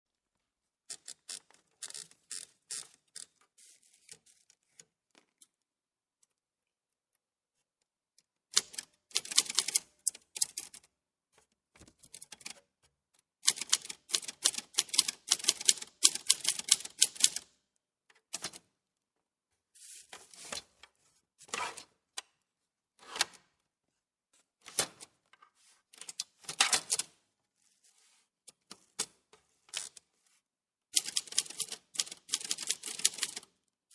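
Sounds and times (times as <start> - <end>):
typewriter keys clacking: 8.5 - 10.9, 13.4 - 17.5, 31.0 - 33.5.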